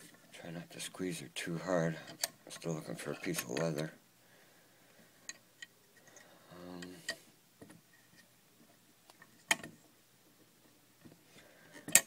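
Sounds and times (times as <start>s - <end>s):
person humming low: 6.4s - 7.1s.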